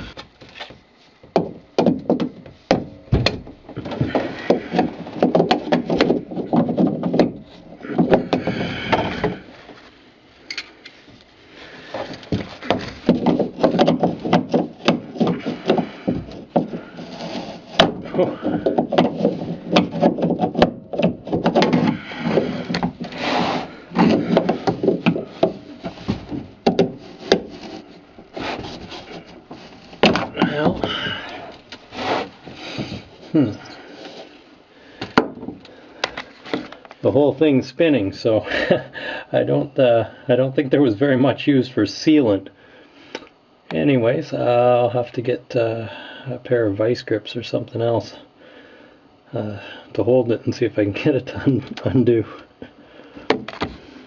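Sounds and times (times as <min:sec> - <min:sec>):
hand tools knocking and clanking: 0:01.2 - 0:09.5, 0:12.1 - 0:27.5, 0:29.1 - 0:31.6.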